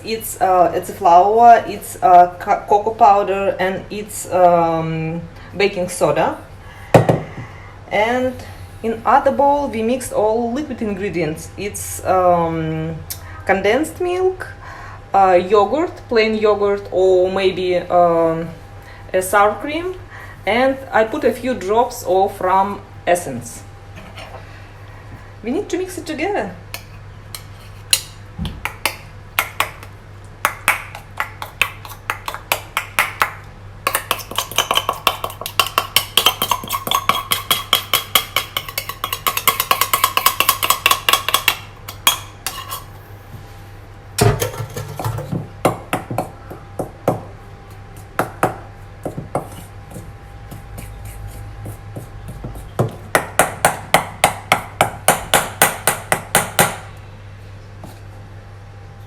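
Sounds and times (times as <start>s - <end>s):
utensil clinking against bowl: 33.9s - 42.9s.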